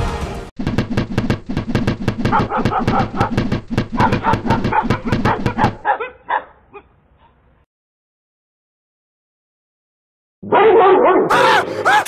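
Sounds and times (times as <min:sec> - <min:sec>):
dog barking rapidly: 0:02.0 - 0:06.6, 0:10.5 - 0:12.0
dog yipping: 0:04.0 - 0:06.9.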